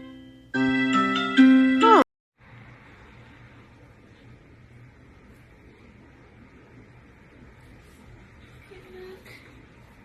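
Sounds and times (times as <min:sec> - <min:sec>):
electronic keyboard tune: 0:00.0 - 0:02.0.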